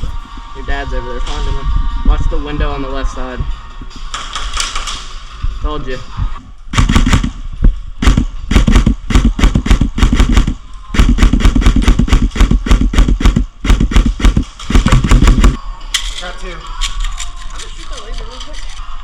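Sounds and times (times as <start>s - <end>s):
airsoft gun rapid firing: 6.8s - 7.4s, 8.0s - 15.6s.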